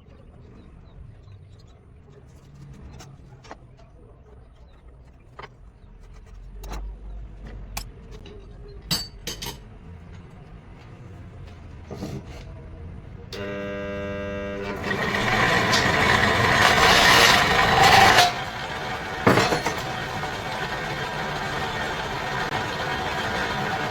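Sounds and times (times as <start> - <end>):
scattered clicks and clinks: 4.6 - 10.6, 14.8 - 23.9.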